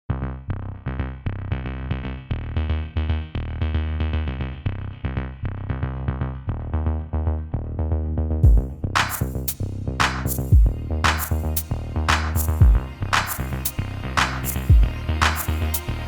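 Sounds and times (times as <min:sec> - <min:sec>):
electronic music with heavy bass: 0:06.6 - 0:16.0.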